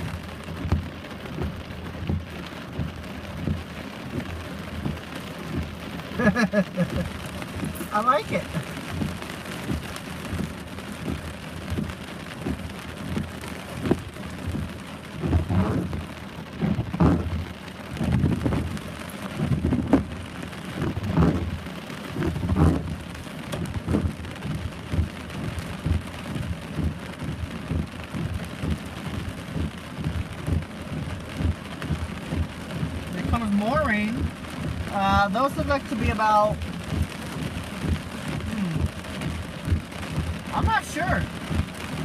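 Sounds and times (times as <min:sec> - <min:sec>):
low thuds: 0:00.0 - 0:06.1, 0:06.9 - 0:42.0
heavy rain falling: 0:00.0 - 0:42.0.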